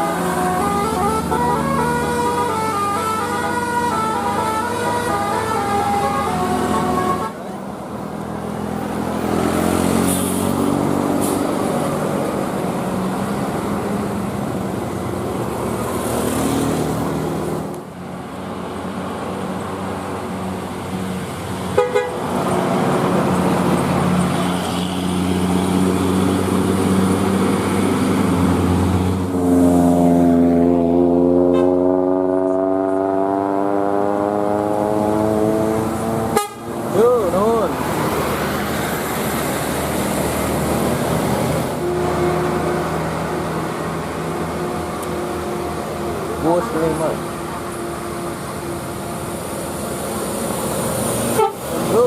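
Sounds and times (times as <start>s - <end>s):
musical air horn tune: 0.0s - 7.4s, 21.8s - 22.2s, 36.3s - 36.7s, 51.3s - 51.6s
long multi-tone horn blast: 0.0s - 7.6s, 21.7s - 22.4s, 30.5s - 33.2s, 35.2s - 36.8s, 41.7s - 43.1s, 51.3s - 51.8s.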